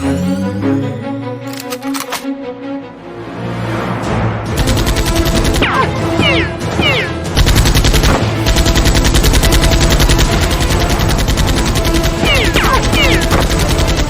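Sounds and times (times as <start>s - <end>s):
background music: 0.0s - 14.0s
rapid automatic gunfire: 4.6s - 14.0s.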